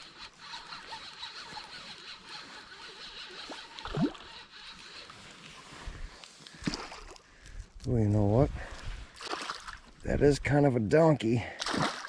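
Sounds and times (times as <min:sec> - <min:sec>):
fishing reel cranking: 0:00.0 - 0:05.1.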